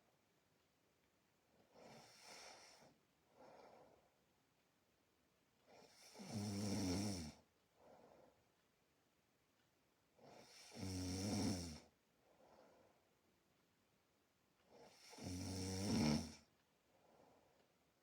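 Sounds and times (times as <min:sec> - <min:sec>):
soft breath: 0:01.6 - 0:04.2, 0:07.7 - 0:08.6, 0:12.2 - 0:13.2
person snoring: 0:05.9 - 0:07.4, 0:10.3 - 0:11.9, 0:14.8 - 0:16.5.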